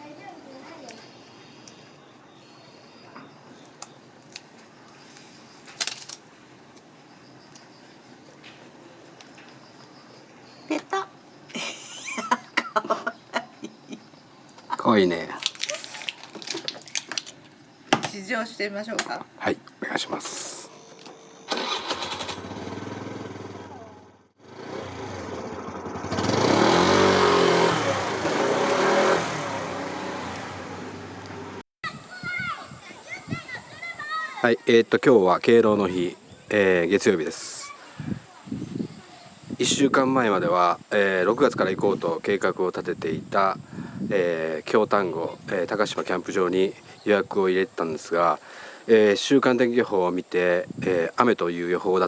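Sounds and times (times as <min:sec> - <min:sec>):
vehicle engine revving: 0:21.4 - 0:31.6.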